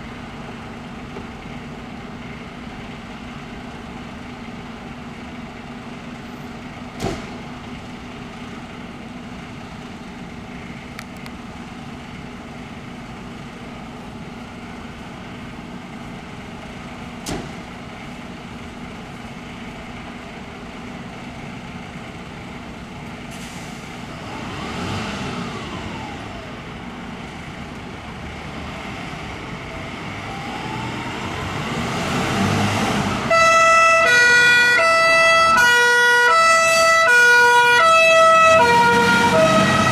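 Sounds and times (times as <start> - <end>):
diesel engine running: 0.0 - 39.9
wailing siren: 29.0 - 31.9, 32.7 - 39.9
two-tone horns: 33.3 - 39.9.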